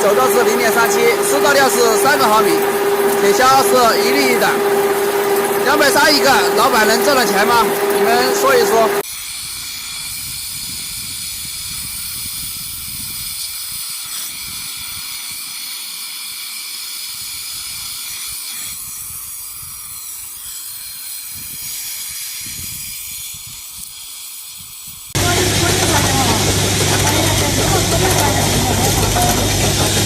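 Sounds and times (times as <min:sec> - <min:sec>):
machine tool cutting hiss: 0:00.0 - 0:30.0.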